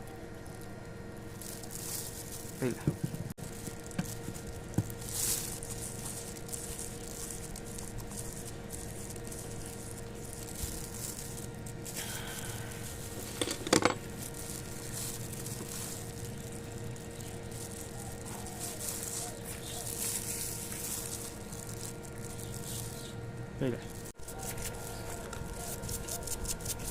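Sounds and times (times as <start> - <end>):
faint steady hum: 0.0 - 26.9.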